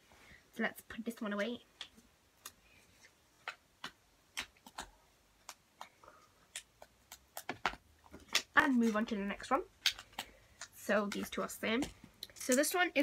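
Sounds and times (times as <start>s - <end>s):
crunchy slime clicking and crackling: 3.4s - 12.8s.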